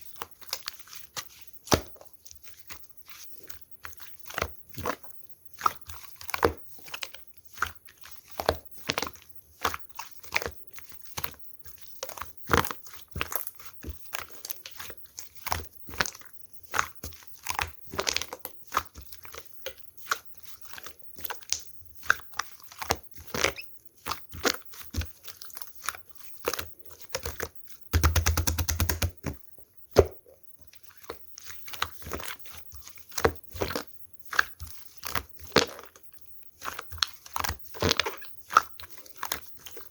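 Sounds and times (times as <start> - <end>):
rattle of quick pops: 28.0 - 29.2.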